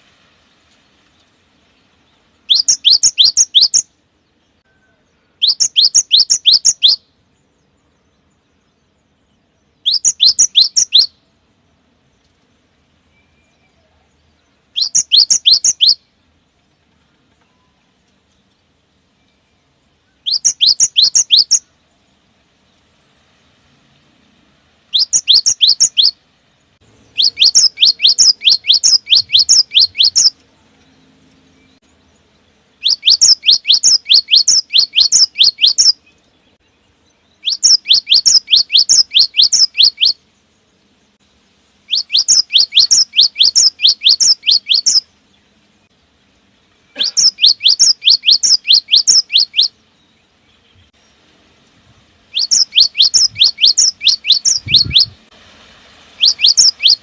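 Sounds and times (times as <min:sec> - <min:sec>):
bird singing whistled notes: 0:01.8 - 0:11.3, 0:13.0 - 0:16.1, 0:17.4 - 0:18.5, 0:19.1 - 0:22.2, 0:24.9 - 0:26.2, 0:27.0 - 0:41.2, 0:41.8 - 0:46.0, 0:46.9 - 0:51.2, 0:52.3 - 0:55.3, 0:56.1 - 0:57.0.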